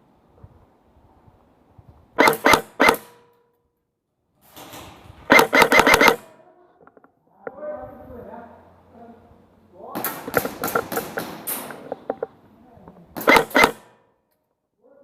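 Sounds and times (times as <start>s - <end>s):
airsoft gun shots: 2.2s - 3.3s, 5.3s - 6.3s, 10.0s - 11.8s, 13.2s - 14.0s.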